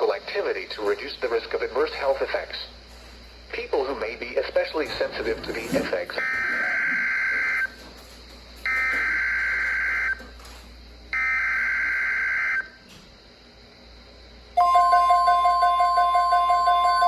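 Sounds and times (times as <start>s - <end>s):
two-tone alert signal: 14.6s - 17.0s.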